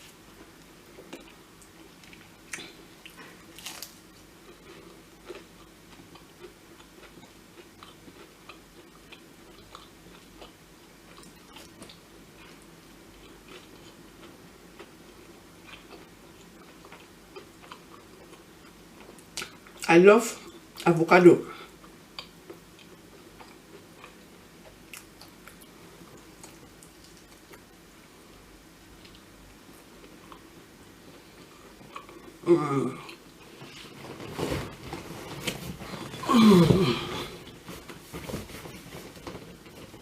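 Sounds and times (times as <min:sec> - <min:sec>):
faint steady hum: 0:00.0 - 0:40.0
person chewing: 0:00.4 - 0:19.9, 0:21.8 - 0:27.7, 0:30.0 - 0:34.2
small clicks and mouth sounds: 0:21.8 - 0:27.7.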